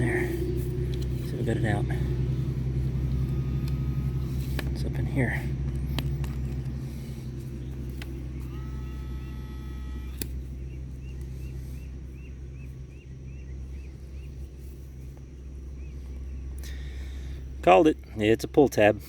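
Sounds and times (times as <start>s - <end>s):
low rumble: 0.0s - 18.4s
metal detector beep: 3.0s - 4.4s, 8.4s - 10.2s
sharp click: 10.1s - 10.4s.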